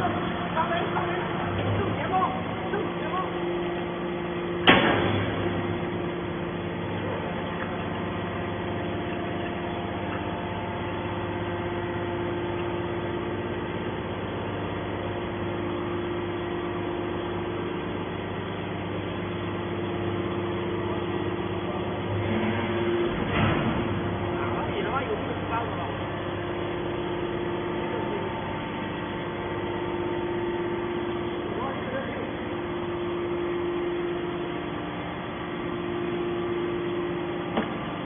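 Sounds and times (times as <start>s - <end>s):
hydraulic baler humming: 0.0s - 38.0s.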